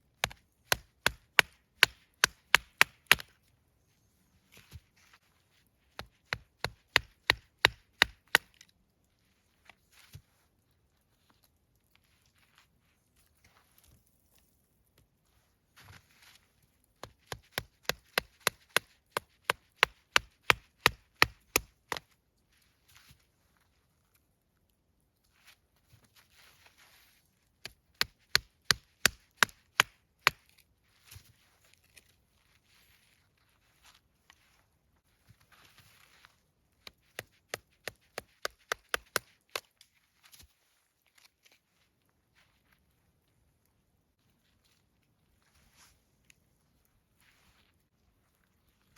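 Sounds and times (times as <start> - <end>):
knife chopping into wood: 0.2 - 3.3, 6.0 - 8.5, 17.0 - 22.0, 28.0 - 30.4, 37.2 - 39.7.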